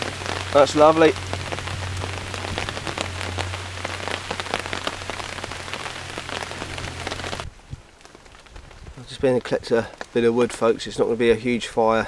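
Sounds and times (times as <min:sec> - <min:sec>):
steady low hum: 0:00.0 - 0:07.5
rain drumming on a tarp: 0:00.0 - 0:12.0.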